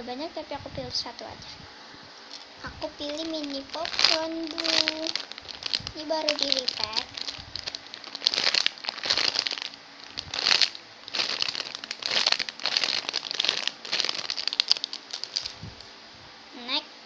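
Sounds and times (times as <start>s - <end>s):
plastic bag crinkling: 2.2s - 15.7s.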